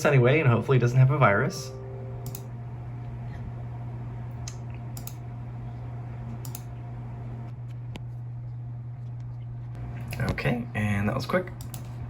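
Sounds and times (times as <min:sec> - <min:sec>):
low electrical hum: 0:00.0 - 0:12.0
computer mouse clicks: 0:04.5 - 0:05.2, 0:06.4 - 0:06.7, 0:11.6 - 0:11.9.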